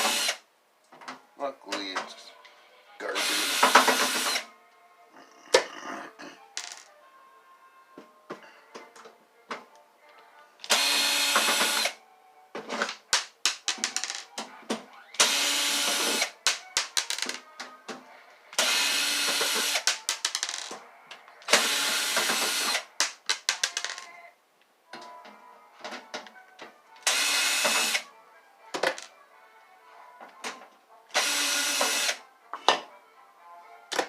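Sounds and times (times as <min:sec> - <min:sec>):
power drill running in reverse: 0:03.2 - 0:04.4.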